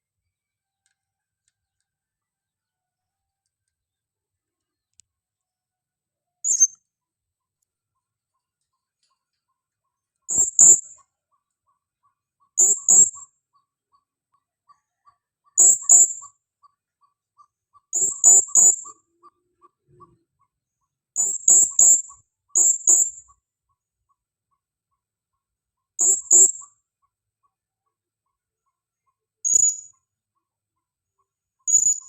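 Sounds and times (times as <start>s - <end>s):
parrot high-pitched chirps: 6.4s - 6.8s, 10.3s - 11.0s, 12.5s - 13.3s, 17.0s - 20.2s.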